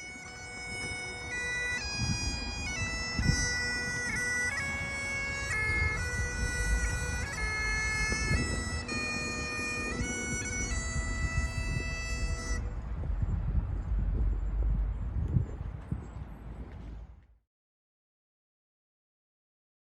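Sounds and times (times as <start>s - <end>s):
bagpipes playing slow melody: 0.0s - 13.4s.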